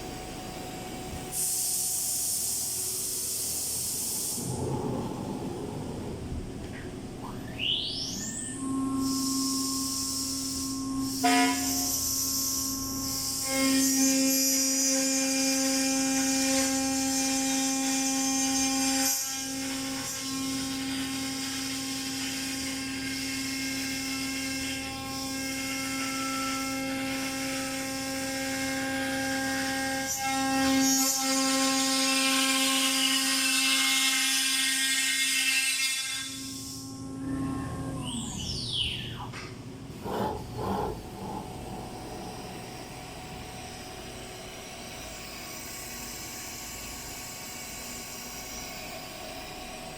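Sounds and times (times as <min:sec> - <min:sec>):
machine spindle whining: 0:36.8 - 0:46.0.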